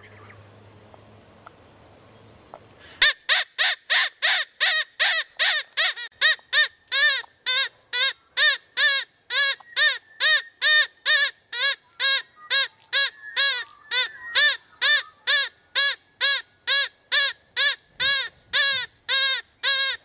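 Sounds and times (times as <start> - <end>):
rabbit squealing: 5.0 - 20.0.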